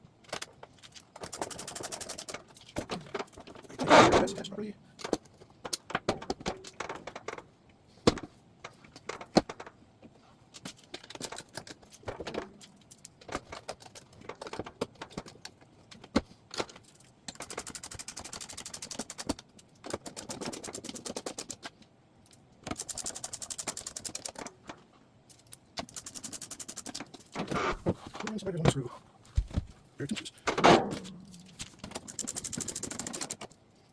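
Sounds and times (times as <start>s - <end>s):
metal panel clicks and knocks: 30.5s - 32.1s
screwdriver fast clicking: 31.3s - 33.4s.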